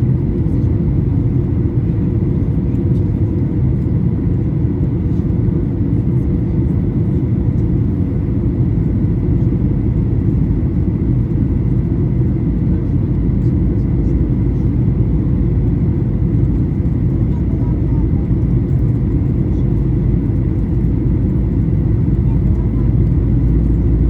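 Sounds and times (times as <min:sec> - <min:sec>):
airplane cabin rumble: 0:00.0 - 0:24.0.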